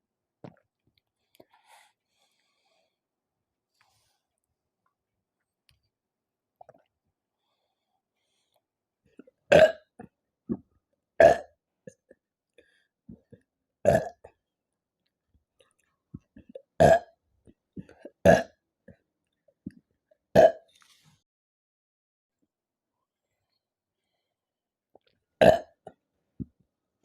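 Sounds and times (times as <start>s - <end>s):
woman burping: 9.5s - 10.0s, 25.4s - 25.8s.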